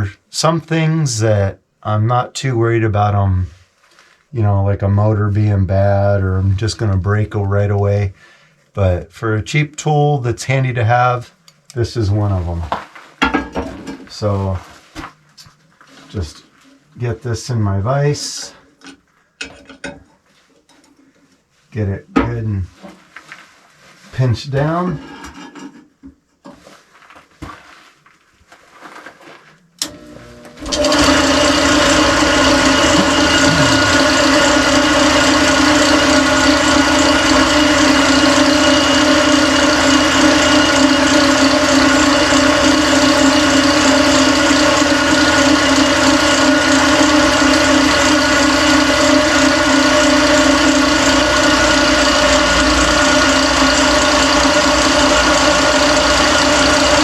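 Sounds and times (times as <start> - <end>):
drill press humming: 29.8 - 57.0.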